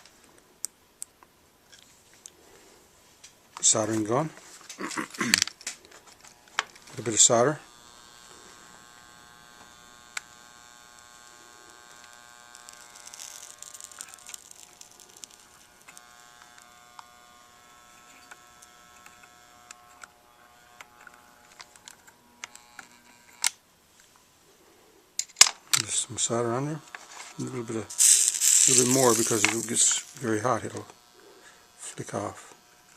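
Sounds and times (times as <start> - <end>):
soldering gun buzzing: 6.1 - 23.6, 26.6 - 32.9
solder crackling and ticking: 11.0 - 17.1, 26.9 - 31.0.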